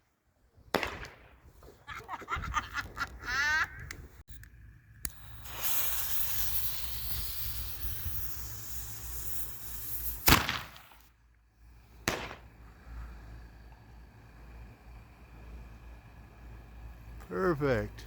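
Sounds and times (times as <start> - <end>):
firework bang: 0.7 - 1.4, 5.1 - 11.1, 12.0 - 12.6
small pop: 0.8 - 1.2, 10.3 - 11.0, 12.0 - 12.5
firework fuse hissing: 4.2 - 18.0.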